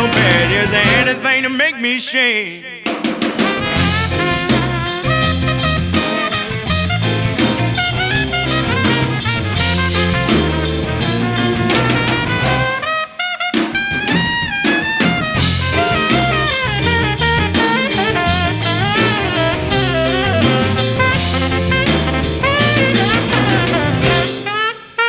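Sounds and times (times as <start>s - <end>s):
bass: 0.0s - 1.2s, 3.7s - 12.9s, 15.0s - 24.5s
drum kit: 0.0s - 1.4s, 2.8s - 25.0s
trumpet and saxophone horn line: 0.0s - 1.6s, 3.2s - 25.0s.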